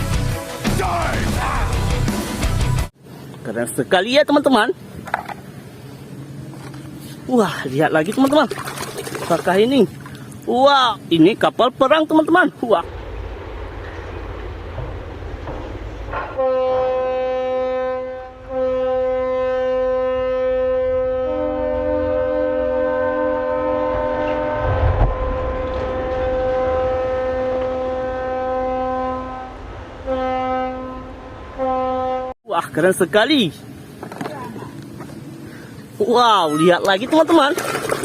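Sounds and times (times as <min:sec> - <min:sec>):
low rumble: 0:12.8 - 0:17.0, 0:24.0 - 0:32.2
deep horn blasts: 0:16.1 - 0:32.4.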